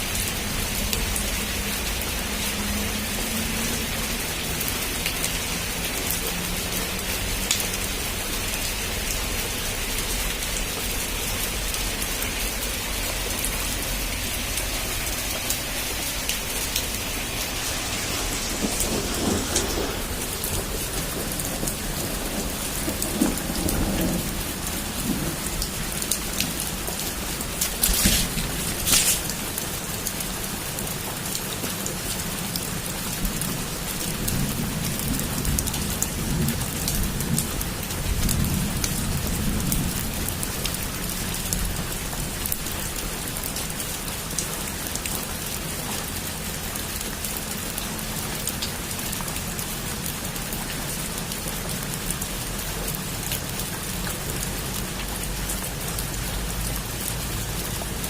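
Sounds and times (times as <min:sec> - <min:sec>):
heavy rain on a rooftop: 0:00.0 - 0:58.0
low rumble of thunder: 0:14.2 - 0:29.5, 0:32.8 - 0:41.9.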